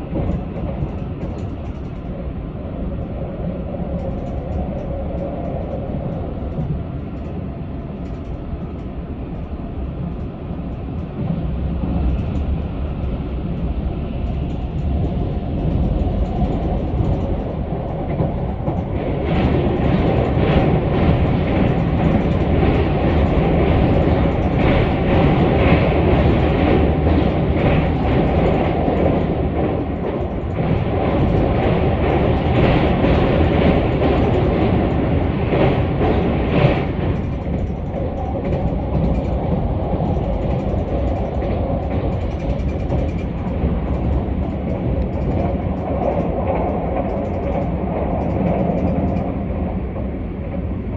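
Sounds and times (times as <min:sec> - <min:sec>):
train rumbling from on board: 0:00.0 - 0:50.9.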